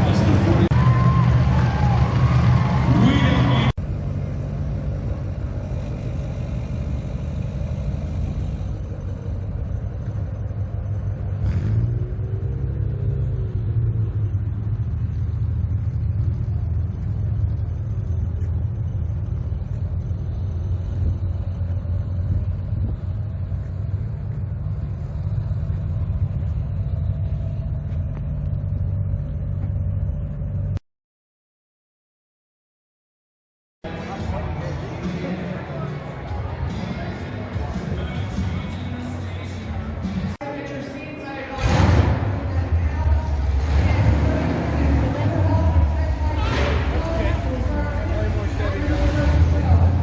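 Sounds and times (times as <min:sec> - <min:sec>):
vehicle engine rumble: 0:00.0 - 0:30.8, 0:33.8 - 0:50.0.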